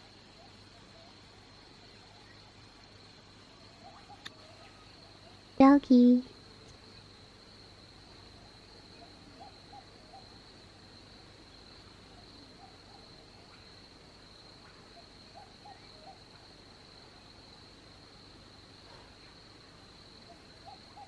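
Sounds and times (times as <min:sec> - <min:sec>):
night insects chirring: 0:00.0 - 0:21.0
soft animal calls: 0:20.3 - 0:21.0.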